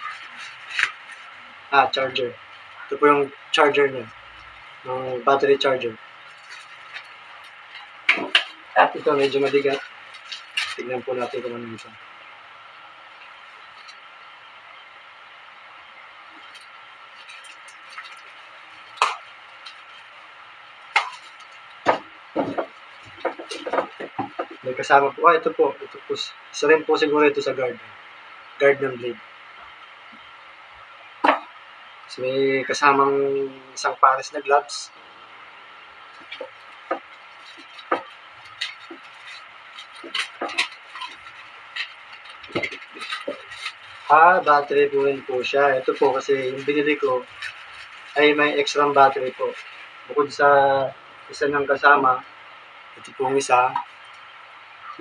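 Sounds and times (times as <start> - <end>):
packaging rustling: 0.0 - 1.5, 6.2 - 12.0, 16.3 - 24.7, 36.1 - 50.1
steady background hum: 0.0 - 55.0.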